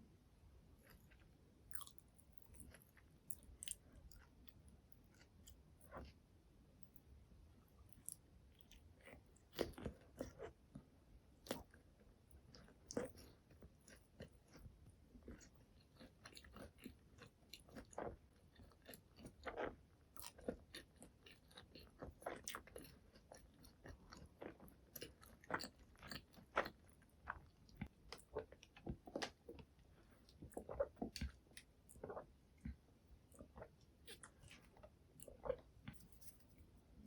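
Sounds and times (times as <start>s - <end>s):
chewing and mouth clicks: 0.8s - 6.2s, 15.2s - 36.6s.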